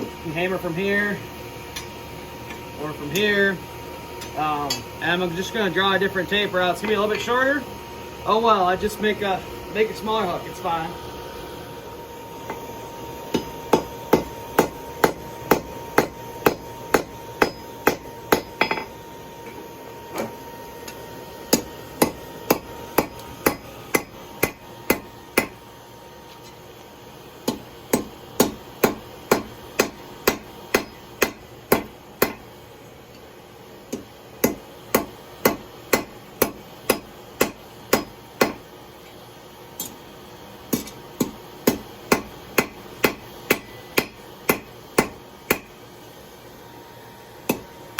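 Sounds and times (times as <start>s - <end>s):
hammer striking steel on anvil: 13.3s - 19.0s, 20.9s - 25.6s, 27.4s - 32.4s, 33.9s - 38.6s, 40.7s - 45.8s, 47.5s - 47.7s.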